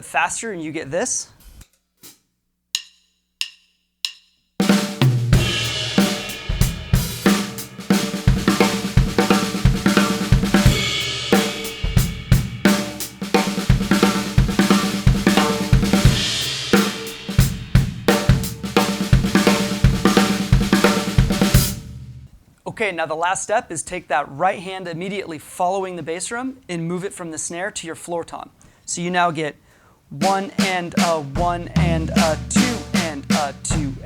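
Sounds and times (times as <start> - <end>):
drum kit playing: 2.8 - 22.4, 30.2 - 34.0.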